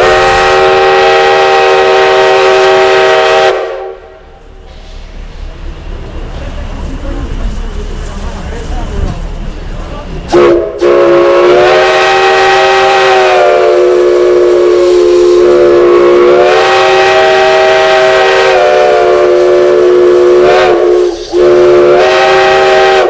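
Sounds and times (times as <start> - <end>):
steam whistle blast: 0.0 - 4.2, 10.3 - 23.0.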